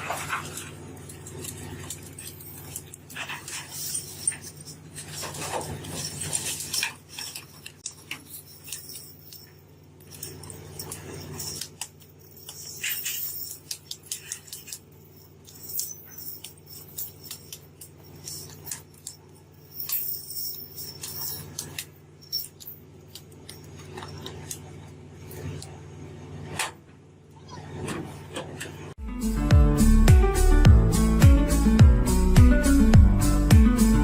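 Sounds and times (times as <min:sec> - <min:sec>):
sharp metallic clicks and clinks: 0:00.3 - 0:24.7.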